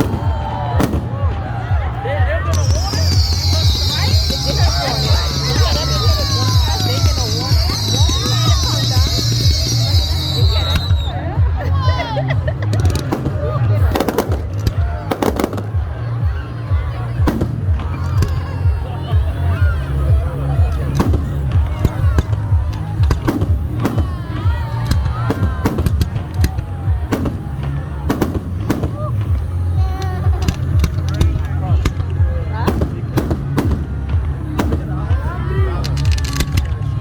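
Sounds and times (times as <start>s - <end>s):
fireworks bangs and crackles: 0.0s - 37.0s
music with low bass: 0.0s - 37.0s
electronic dance music: 1.7s - 17.2s.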